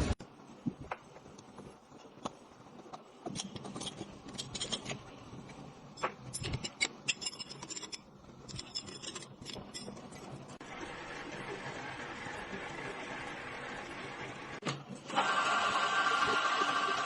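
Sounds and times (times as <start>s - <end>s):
scraping on metal parts: 3.3s - 10.3s.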